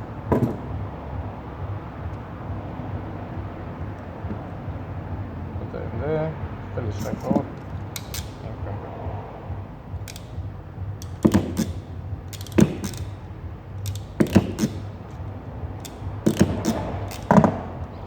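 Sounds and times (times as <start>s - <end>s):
low steady hum: 0.0s - 18.0s
sharp clicks and clacks of parts: 0.3s - 0.8s, 6.9s - 8.5s, 9.9s - 18.0s.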